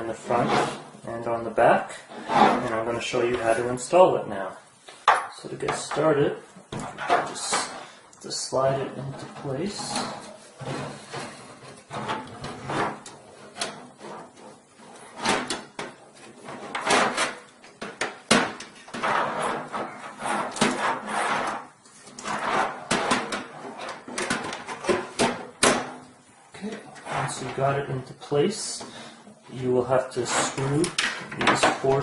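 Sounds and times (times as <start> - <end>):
metal scraping and clunking: 2.0 - 3.7, 8.9 - 18.0, 18.8 - 26.0, 27.0 - 27.9.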